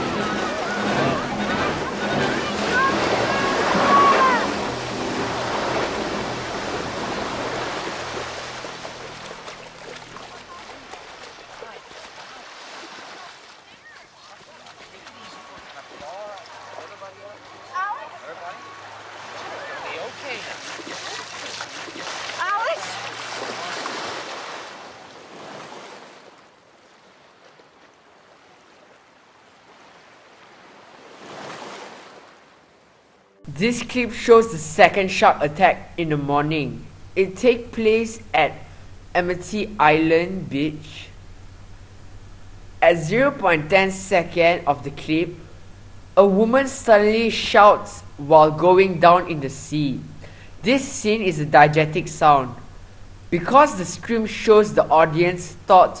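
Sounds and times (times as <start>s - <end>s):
surf washing: 0.0s - 33.4s
low steady hum: 33.4s - 56.0s.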